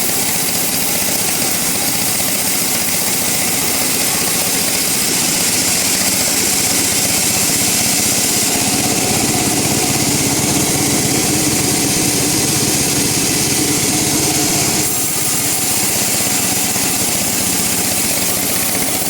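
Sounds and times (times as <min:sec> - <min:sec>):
woodworking machinery hissing: 0:00.0 - 0:19.0
motor hum: 0:04.6 - 0:19.0.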